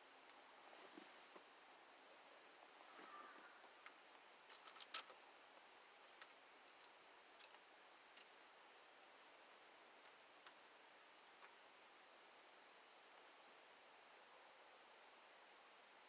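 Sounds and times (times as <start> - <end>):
small clicks of screws: 3.8 - 5.2.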